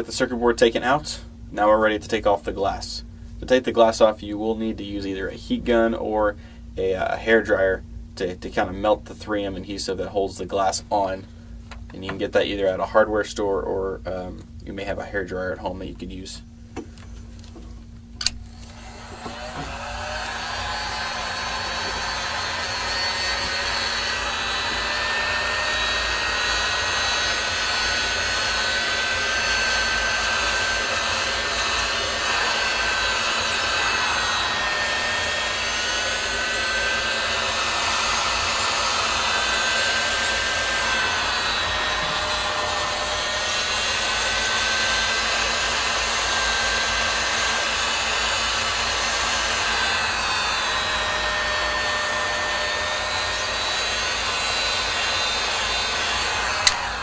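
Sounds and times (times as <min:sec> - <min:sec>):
hot-air blower rushing: 0:16.2 - 0:57.0.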